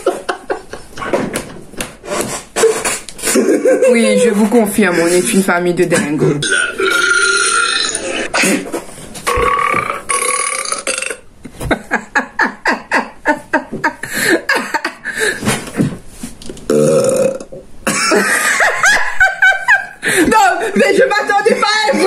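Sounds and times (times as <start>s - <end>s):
person belching: 6.4s - 8.5s, 9.3s - 11.3s, 16.7s - 17.6s.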